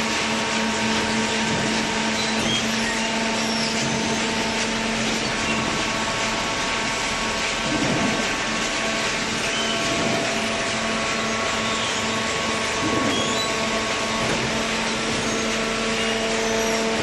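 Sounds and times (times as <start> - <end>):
baler motor and pump hum: 0.0 - 17.0
noisy machine drone: 0.0 - 17.0.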